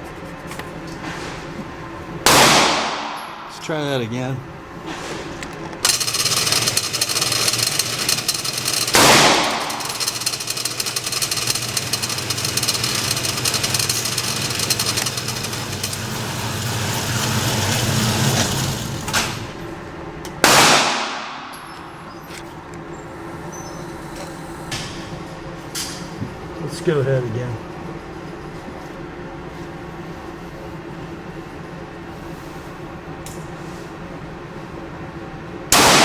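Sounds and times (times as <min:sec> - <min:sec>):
low background hum: 0:00.0 - 0:36.0
handgun shots with ringing echo: 0:02.3 - 0:03.5, 0:08.9 - 0:10.2, 0:20.4 - 0:21.8, 0:35.8 - 0:36.0.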